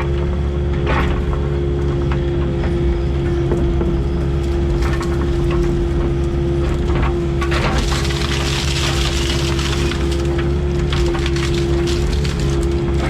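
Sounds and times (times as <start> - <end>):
excavator engine and hydraulics humming: 0.0 - 13.0
brush cracking and splintering: 4.2 - 13.0.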